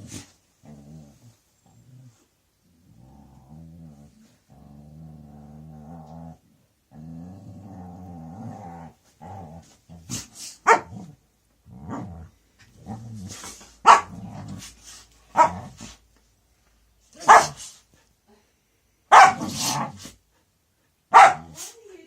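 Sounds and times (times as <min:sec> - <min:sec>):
dog growling: 0:00.0 - 0:10.2, 0:10.9 - 0:14.8.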